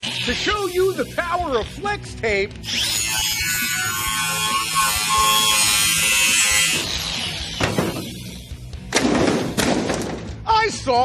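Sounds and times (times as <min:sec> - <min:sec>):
power saw cutting: 0:02.6 - 0:08.6.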